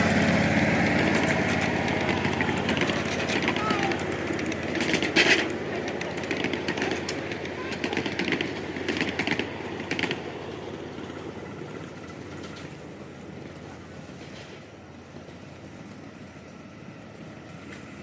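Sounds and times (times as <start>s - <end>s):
steam train running: 0.0s - 18.0s
rapid clicking: 0.8s - 10.2s.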